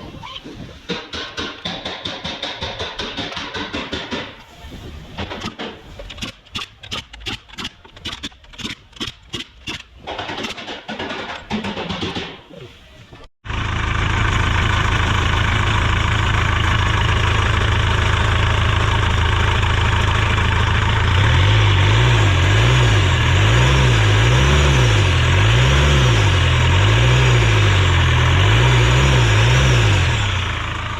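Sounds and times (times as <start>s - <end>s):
diesel engine idling: 13.4s - 30.9s.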